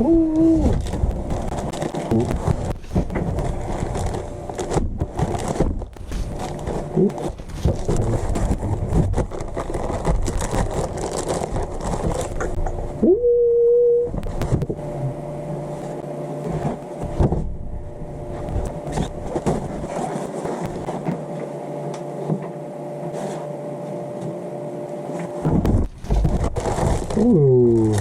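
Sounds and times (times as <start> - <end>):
person saying ooh: 0.0 - 0.8, 13.0 - 14.1, 27.2 - 28.0
packaging rustling and crinkling: 0.3 - 12.6, 18.4 - 21.3, 25.2 - 28.0.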